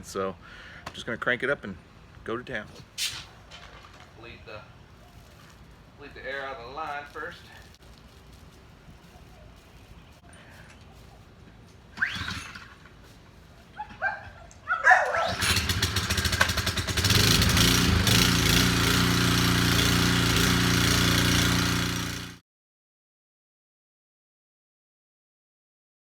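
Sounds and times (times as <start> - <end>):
starter cord pulls: 11.9 - 13.0, 15.1 - 19.1
pressure washer engine running: 12.0 - 12.8, 15.1 - 22.4.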